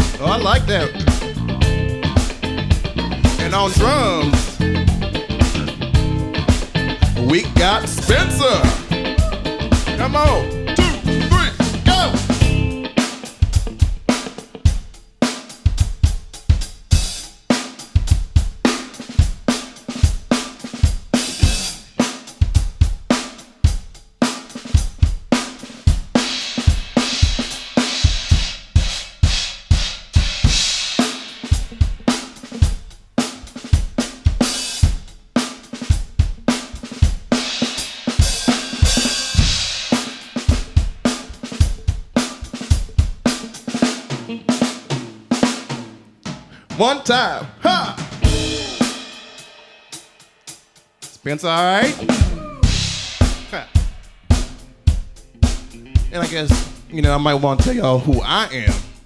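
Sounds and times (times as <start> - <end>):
funk drum groove: 0.0 - 46.9, 47.5 - 59.0
cymbals ringing: 48.2 - 50.1.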